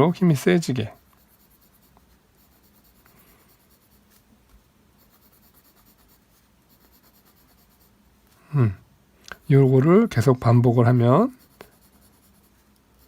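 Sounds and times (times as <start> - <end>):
pencil scratching on paper: 0.7 - 4.2, 5.0 - 7.9, 11.0 - 13.0.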